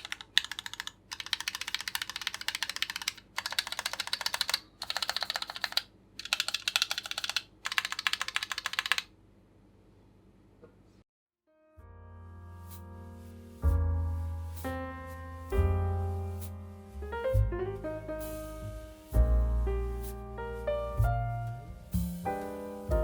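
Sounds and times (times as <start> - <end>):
mechanical keyboard typing: 0.0 - 9.1.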